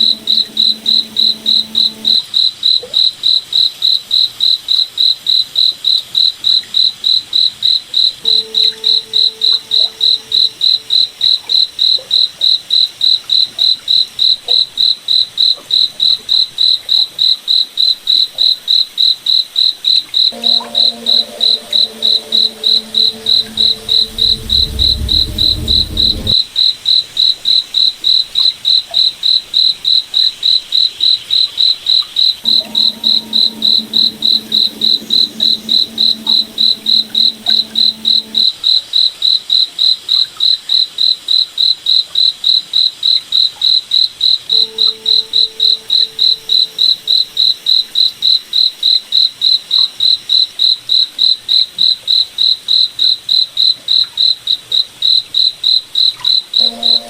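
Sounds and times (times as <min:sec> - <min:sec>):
faint low drone: 0:00.0 - 0:02.2, 0:20.4 - 0:26.4, 0:32.4 - 0:38.5, 0:56.6 - 0:57.0.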